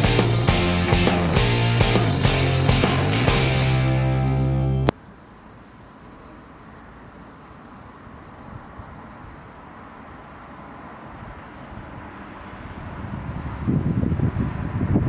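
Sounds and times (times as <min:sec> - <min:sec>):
low rumble with hiss: 0:00.0 - 0:04.9.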